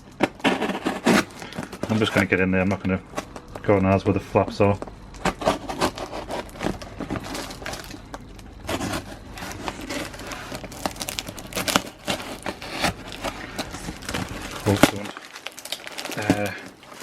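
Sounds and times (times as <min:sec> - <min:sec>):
tape and cardboard tearing: 0:00.1 - 0:02.2, 0:05.2 - 0:08.0, 0:08.6 - 0:17.0.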